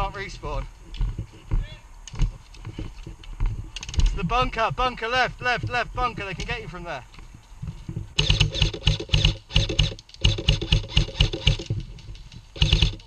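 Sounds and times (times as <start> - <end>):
airsoft rifle firing bursts: 8.2 - 11.8, 12.6 - 13.0.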